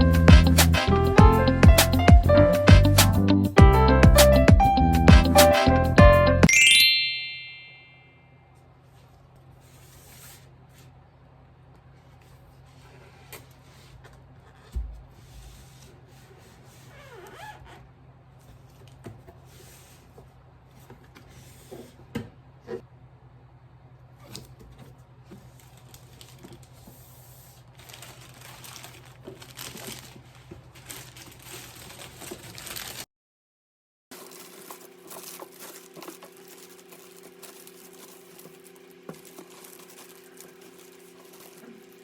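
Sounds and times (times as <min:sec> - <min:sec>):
rustling of materials: 0:24.2 - 0:33.1, 0:34.1 - 0:42.0.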